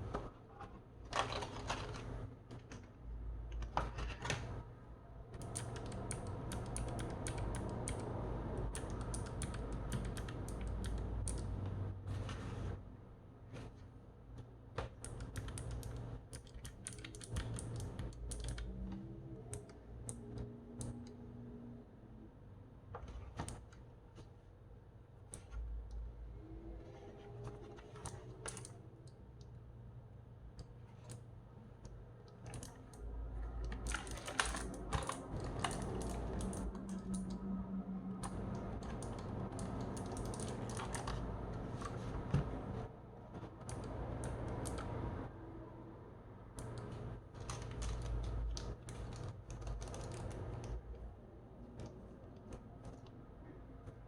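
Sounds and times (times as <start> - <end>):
typing on mechanical keyboard: 1.1 - 4.6, 5.3 - 11.8, 14.8 - 21.2, 27.4 - 29.2, 32.2 - 37.6, 38.2 - 42.0, 43.6 - 45.2, 46.5 - 51.0.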